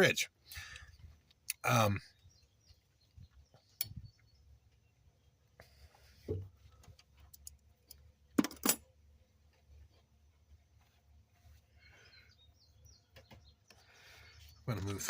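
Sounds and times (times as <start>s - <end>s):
small parts clicking and tapping: 6.7s - 8.8s.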